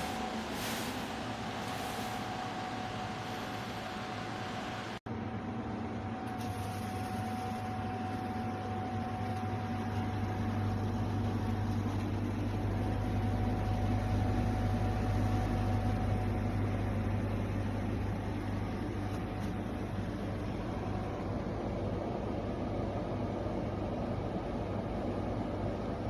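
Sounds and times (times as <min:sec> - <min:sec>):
fan air rushing: 0:00.0 - 0:05.0.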